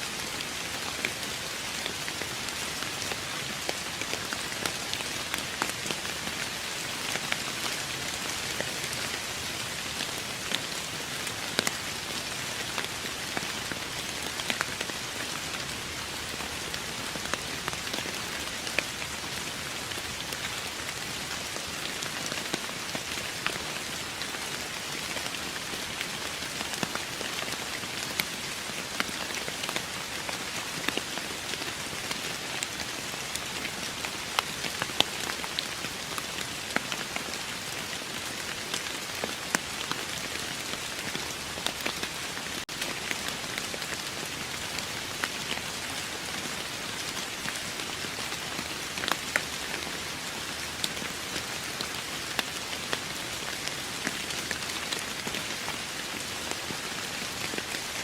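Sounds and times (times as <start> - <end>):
rain hissing on a surface: 0.0 - 58.0.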